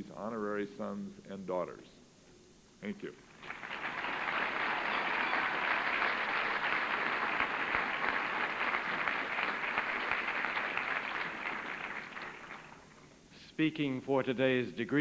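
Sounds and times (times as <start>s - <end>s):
large crowd applauding: 3.2s - 13.1s.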